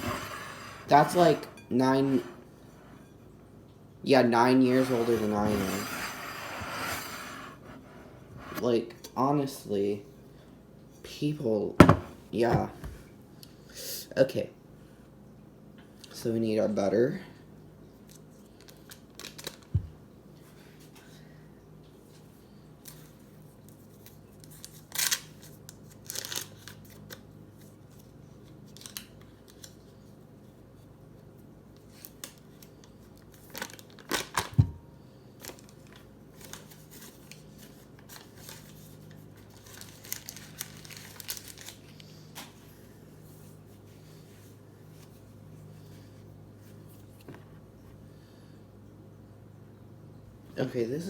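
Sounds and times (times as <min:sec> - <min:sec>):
low steady hum: 0:00.0 - 0:24.7
paper wrapper crinkling and tearing: 0:18.6 - 0:19.7, 0:24.0 - 0:28.0, 0:28.7 - 0:29.9, 0:33.2 - 0:34.5, 0:35.4 - 0:42.1.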